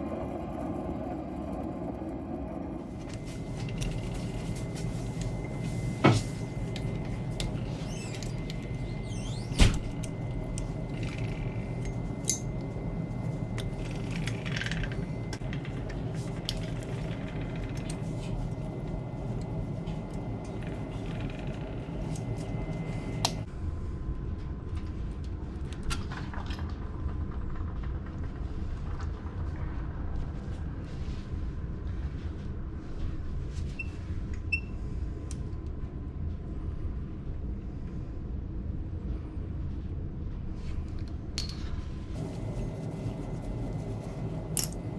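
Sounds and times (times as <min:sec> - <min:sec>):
steady low hum: 0:00.0 - 0:44.9.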